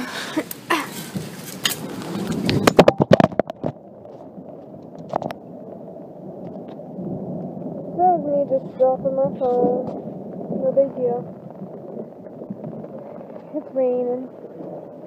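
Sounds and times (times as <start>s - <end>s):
phone clattering on ground: 2.5s - 3.8s
rain hiss: 4.4s - 15.0s.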